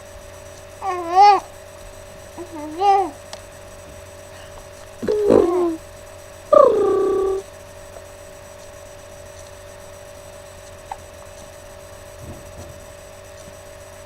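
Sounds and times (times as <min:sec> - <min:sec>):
faint two-tone hum: 0:00.0 - 0:14.0
girl whining cry: 0:05.0 - 0:05.8.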